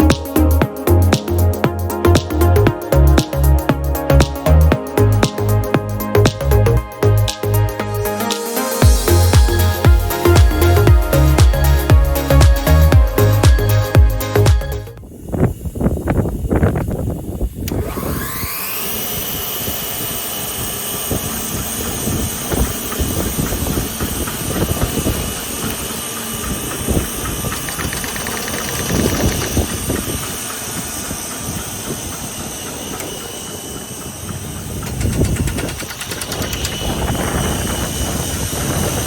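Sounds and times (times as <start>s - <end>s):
drill motor whine: 8.0s - 39.0s.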